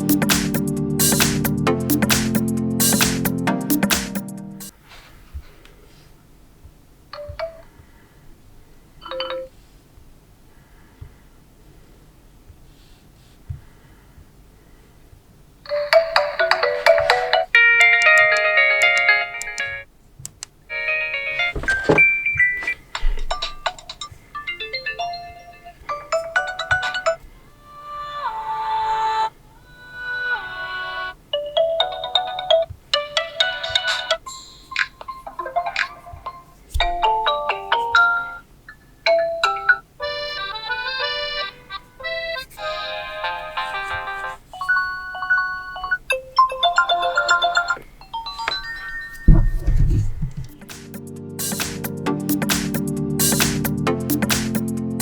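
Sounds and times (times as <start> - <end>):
ringtone melodies: 0.0 - 4.7, 15.7 - 19.9, 20.7 - 22.8, 24.4 - 29.3, 29.9 - 38.5, 39.1 - 49.7.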